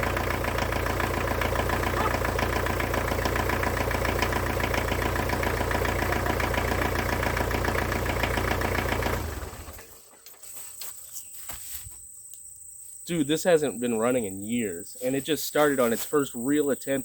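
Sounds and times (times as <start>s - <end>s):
tractor diesel engine idling: 0.0s - 10.4s.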